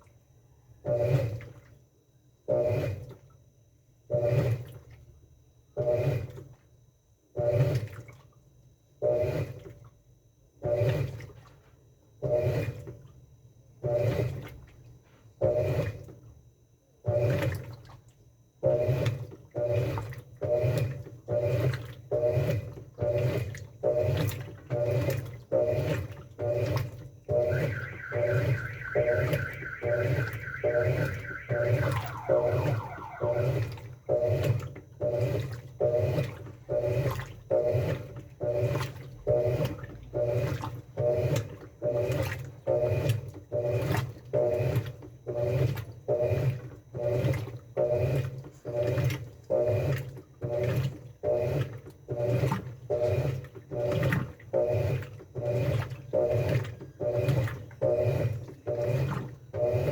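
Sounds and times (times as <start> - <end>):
washing machine water sloshing: 7.5 - 9.9, 17.2 - 18.2, 18.8 - 31.4, 35.2 - 42.5, 47.1 - 59.9
high motor whine: 27.3 - 33.9.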